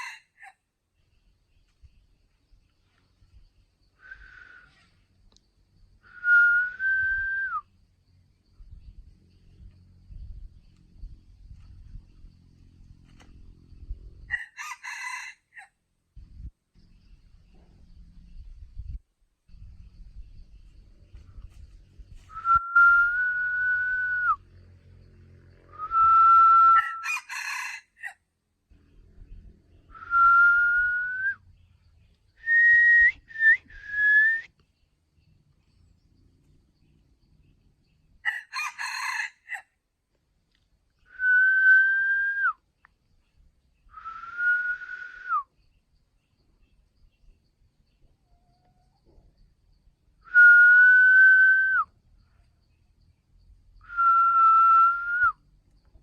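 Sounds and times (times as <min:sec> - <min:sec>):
rooster crowing: 0:00.0 - 0:00.5, 0:14.3 - 0:15.7, 0:26.8 - 0:28.2, 0:38.2 - 0:39.7.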